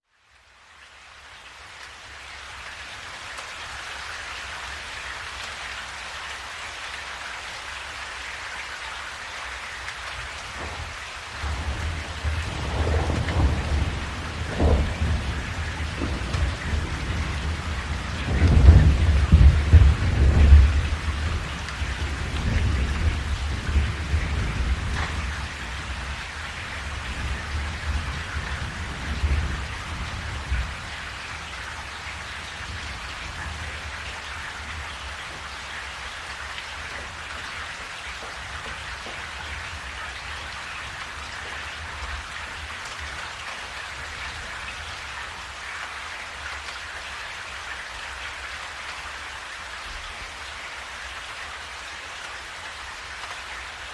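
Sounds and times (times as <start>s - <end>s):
steady rain falling: 0.0s - 53.9s
thunder rumble: 10.4s - 35.6s.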